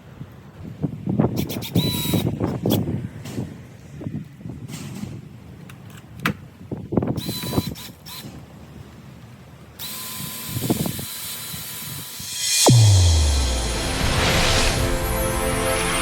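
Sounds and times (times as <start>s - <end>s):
cordless drill driving screws: 9.8s - 12.2s
falling whoosh into deep boom: 12.2s - 16.0s.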